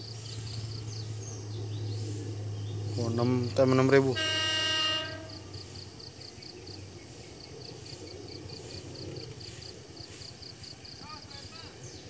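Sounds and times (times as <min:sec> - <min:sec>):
insect chirping: 0:00.0 - 0:12.0
train horn: 0:03.8 - 0:05.8.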